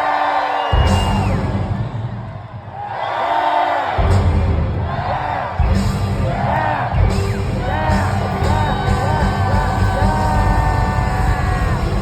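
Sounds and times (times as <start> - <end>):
live rock band playing: 5.6 - 12.0
voices singing and whooping: 6.2 - 12.0.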